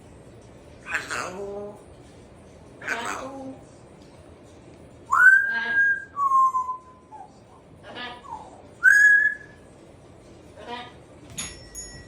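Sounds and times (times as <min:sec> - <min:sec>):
parrot whistling: 0:05.1 - 0:07.4, 0:08.2 - 0:09.6.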